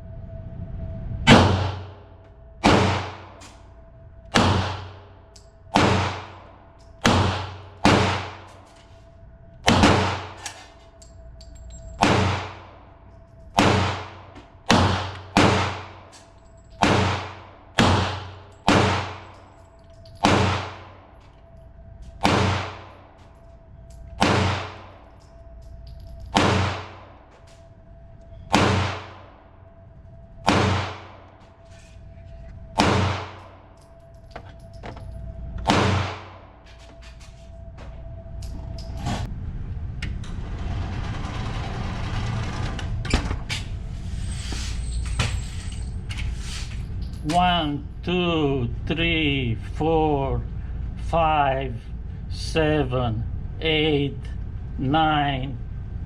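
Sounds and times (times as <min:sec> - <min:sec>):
pistol firing single shots: 0:04.4 - 0:04.9, 0:07.0 - 0:08.4, 0:14.7 - 0:15.9, 0:16.8 - 0:19.2, 0:20.2 - 0:20.8, 0:22.2 - 0:22.8, 0:24.2 - 0:24.8, 0:26.3 - 0:27.0, 0:28.5 - 0:29.2, 0:30.5 - 0:31.1, 0:32.8 - 0:33.4, 0:35.6 - 0:36.3.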